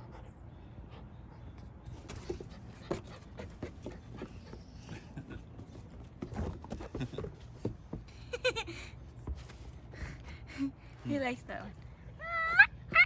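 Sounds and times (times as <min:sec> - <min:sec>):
dog panting: 0:02.2 - 0:05.2.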